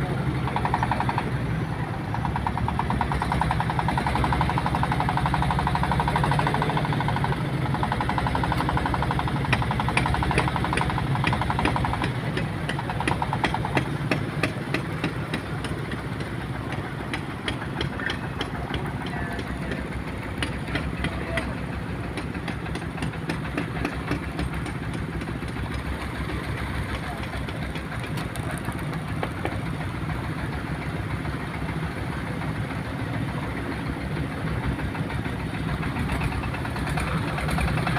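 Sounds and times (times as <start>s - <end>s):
engine knocking: 0.0s - 37.9s
sharp clacks: 6.1s - 29.6s.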